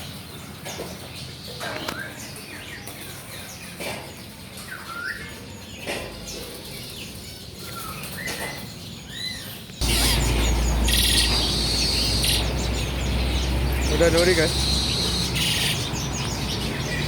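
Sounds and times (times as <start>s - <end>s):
songbirds chirping and whistling: 0.0s - 17.0s
wings fluttering: 9.8s - 17.0s.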